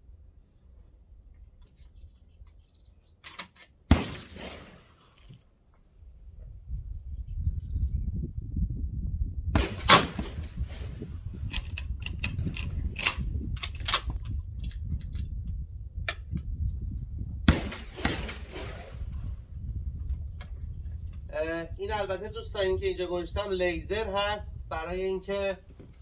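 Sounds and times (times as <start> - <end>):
sharp clicks and knocks: 3.2 - 3.7, 11.5 - 15.2
shotgun bang: 3.9 - 5.2, 9.6 - 11.1, 17.5 - 19.4
steady low rumble: 5.9 - 26.0.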